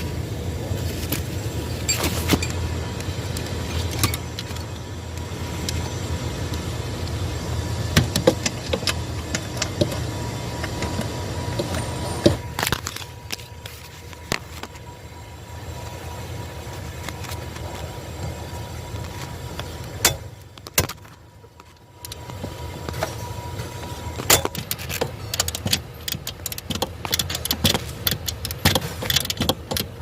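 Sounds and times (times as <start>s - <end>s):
hand tools clicking and clattering: 24.2s - 30.0s.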